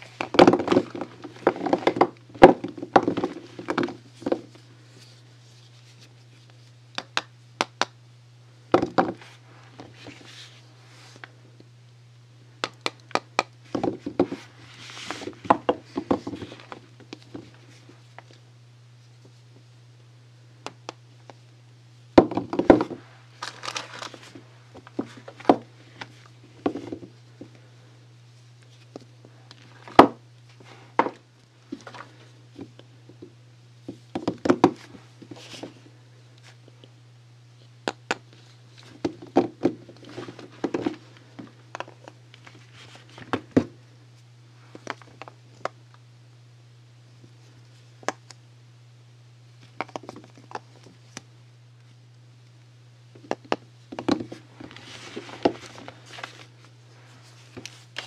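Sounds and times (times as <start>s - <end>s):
steady low hum: 0.0s - 58.0s
taps and knocks of objects: 0.2s - 4.5s, 33.9s - 34.8s, 53.2s - 54.4s
wrapper crinkling: 23.3s - 24.4s.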